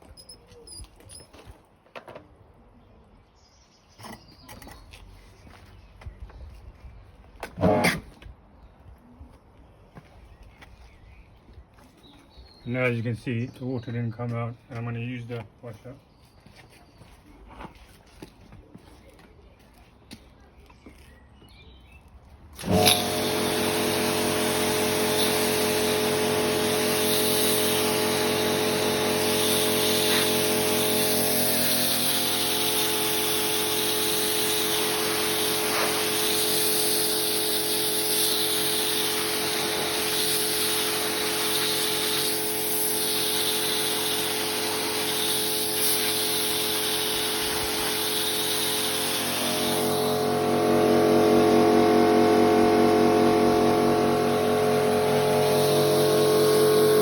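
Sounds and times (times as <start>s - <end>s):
pressure washer motor hum: 7.5s - 8.1s, 22.6s - 57.0s
water spraying hiss: 22.7s - 50.3s, 54.2s - 57.0s.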